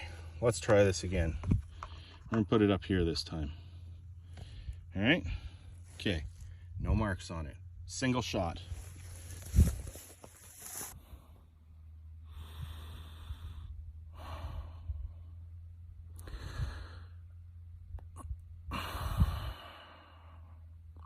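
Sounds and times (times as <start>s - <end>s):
steady low hum: 0.0s - 21.0s
person breathing: 3.5s - 6.8s, 12.2s - 15.5s, 16.2s - 17.4s, 18.7s - 20.8s.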